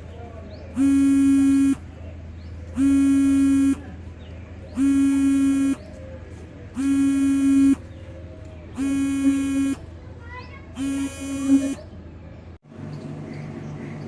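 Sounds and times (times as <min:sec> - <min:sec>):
electronic buzzer sounding: 0:00.8 - 0:01.8, 0:02.8 - 0:03.9, 0:04.8 - 0:05.8, 0:06.8 - 0:07.8, 0:08.8 - 0:09.8, 0:10.8 - 0:11.8.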